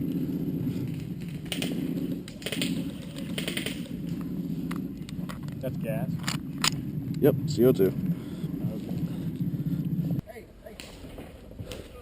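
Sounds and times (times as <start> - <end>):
low hum: 0.0 - 10.3
airsoft gun bursts: 1.4 - 3.9.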